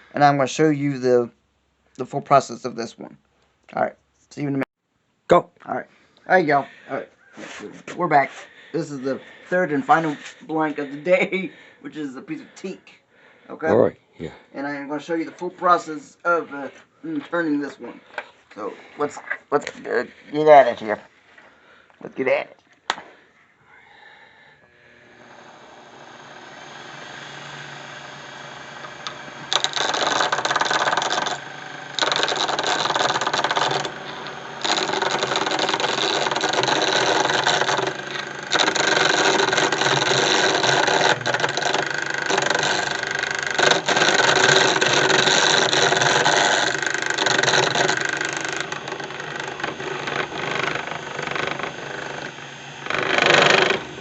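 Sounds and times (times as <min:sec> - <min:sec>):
turning tool cutting wood: 0:06.5 - 0:11.4, 0:24.7 - 0:54.0
lathe motor spinning: 0:24.7 - 0:54.0.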